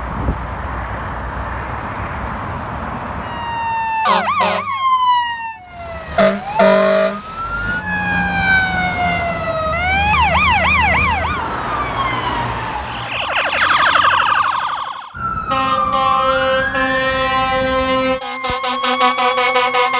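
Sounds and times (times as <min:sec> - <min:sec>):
emergency vehicle sirens wailing: 0:03.1 - 0:19.9
vehicle horn blasts: 0:04.1 - 0:04.7, 0:06.2 - 0:07.3, 0:15.5 - 0:19.9.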